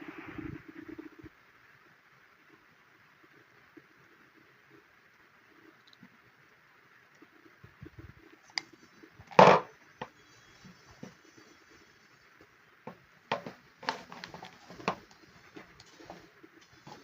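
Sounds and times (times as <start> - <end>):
handling clicks and knocks: 12.9 - 16.2.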